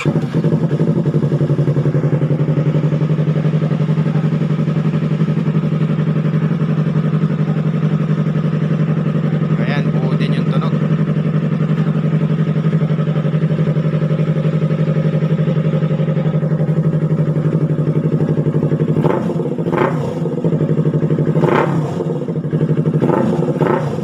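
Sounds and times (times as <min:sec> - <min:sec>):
motorcycle engine idling: 0:00.0 - 0:24.0.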